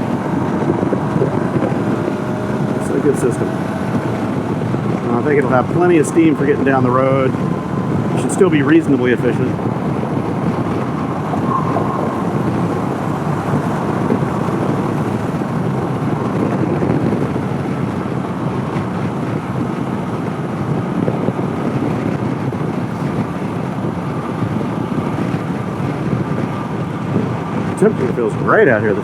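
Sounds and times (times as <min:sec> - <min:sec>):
motorcycle engine running: 0:00.0 - 0:11.4
wind noise on microphone: 0:00.0 - 0:29.0.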